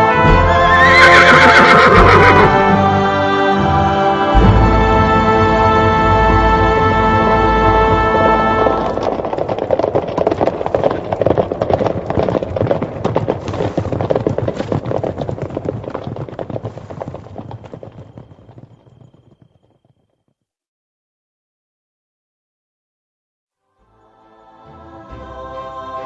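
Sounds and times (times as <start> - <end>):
galloping horse hoofbeats: 0.0 - 2.7, 5.9 - 20.2.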